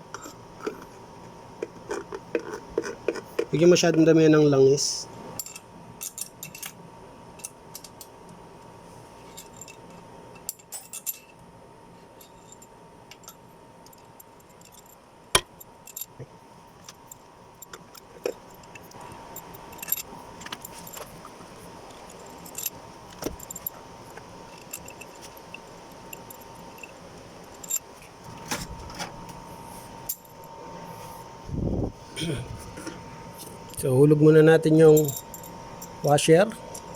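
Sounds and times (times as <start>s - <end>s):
metal bolts and washers clinking: 5.4s - 6.8s, 9.3s - 11.4s, 12.2s - 16.2s, 16.8s - 29.1s, 34.9s - 36.9s.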